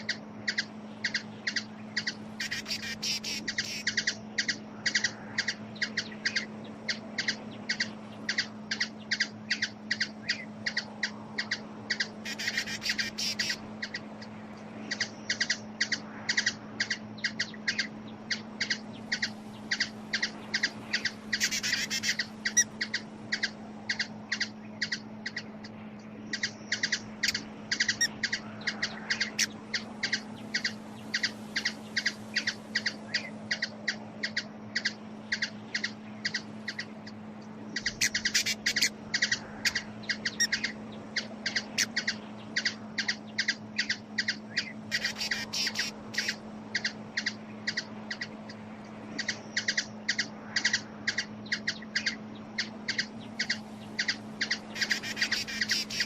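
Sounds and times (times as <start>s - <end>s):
hummingbird chip notes: 0.0s - 14.0s, 49.2s - 56.0s
constant low hum: 0.0s - 56.0s.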